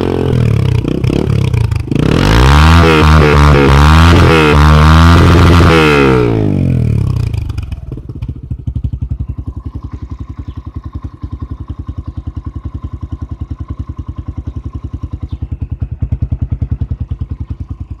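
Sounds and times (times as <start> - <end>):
motorcycle engine idling: 0.0 - 4.7, 5.3 - 18.0.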